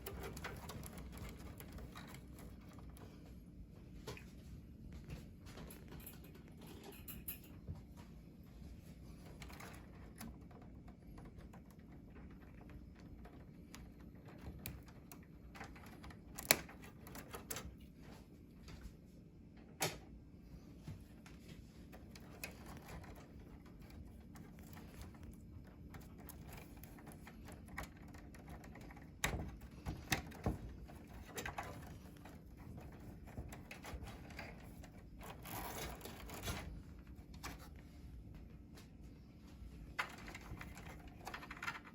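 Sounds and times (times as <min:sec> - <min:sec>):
faint low hum: 0:00.0 - 0:41.9
computer hardware clicks and knocks: 0:05.5 - 0:07.8.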